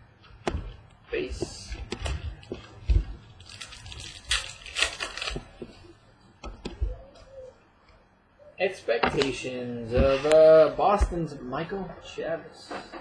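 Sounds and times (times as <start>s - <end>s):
cards rustling: 1.9s - 7.1s
wrapper crinkling and tearing: 3.3s - 5.8s.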